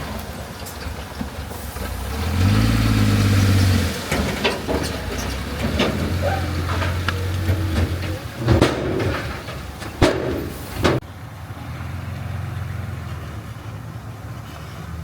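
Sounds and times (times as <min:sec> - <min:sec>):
heavy machine diesel engine: 0:00.0 - 0:15.0
metal clanks and knocks: 0:03.2 - 0:11.0.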